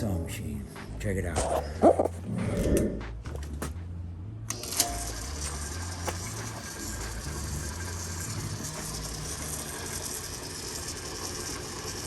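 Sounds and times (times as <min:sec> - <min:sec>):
lathe motor whirring: 0:04.5 - 0:12.0.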